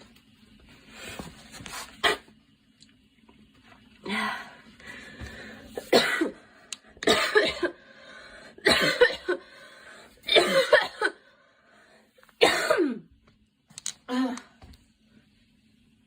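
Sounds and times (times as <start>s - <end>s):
girl coughing: 5.8s - 6.4s, 7.0s - 7.8s, 8.6s - 9.4s, 10.3s - 11.2s, 12.4s - 13.1s.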